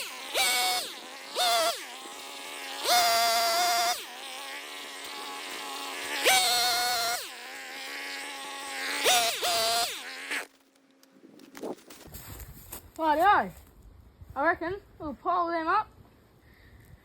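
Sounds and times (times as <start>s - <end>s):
chainsaw revving and idling: 0.0s - 10.7s.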